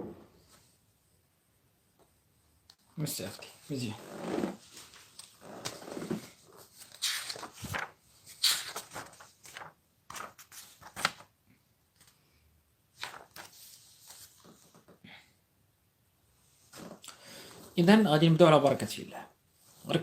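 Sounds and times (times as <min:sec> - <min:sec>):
rustling: 0:03.3 - 0:11.2.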